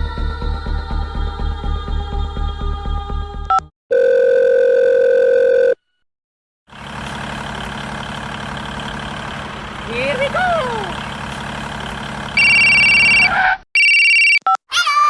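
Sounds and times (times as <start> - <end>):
vehicle engine idling: 6.7 - 13.4
loud electronic beep: 12.4 - 14.0.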